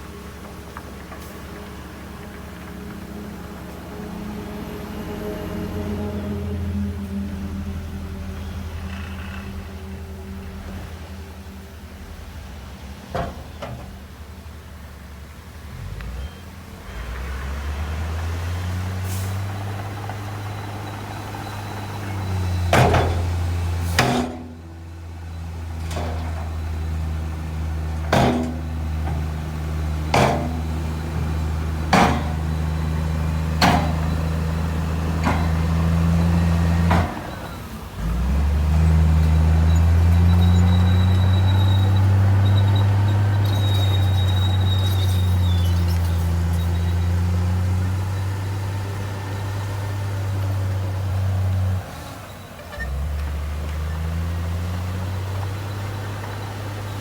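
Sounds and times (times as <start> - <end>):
diesel engine drone: 0.0 - 57.0
sharp metallic clanks: 28.1 - 29.3.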